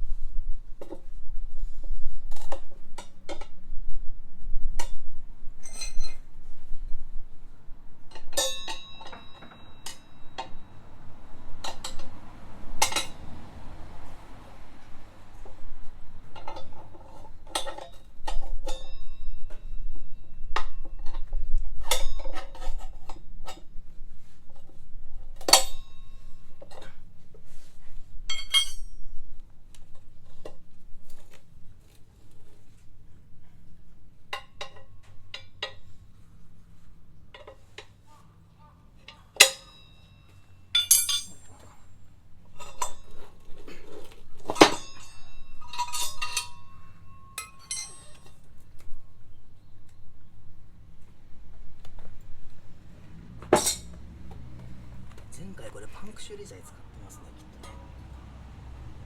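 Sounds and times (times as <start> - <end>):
metal tools clinking: 8.1 - 10.8, 28.3 - 29.0, 39.4 - 41.7, 42.6 - 48.5.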